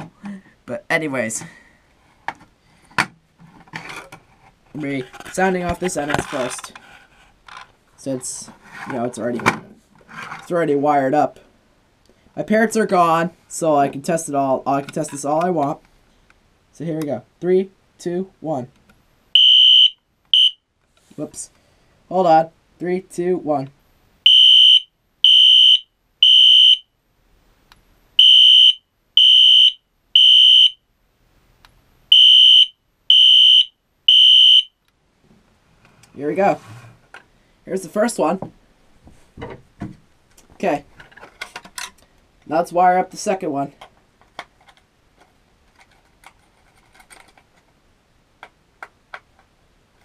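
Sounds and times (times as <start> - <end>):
fire alarm horn beeps: 19.4 - 20.6, 24.3 - 26.9, 28.2 - 30.8, 32.1 - 34.7.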